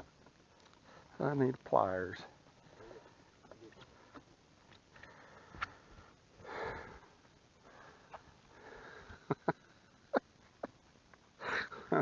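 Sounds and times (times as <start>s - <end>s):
breathy rush of noise: 2.2s - 10.6s.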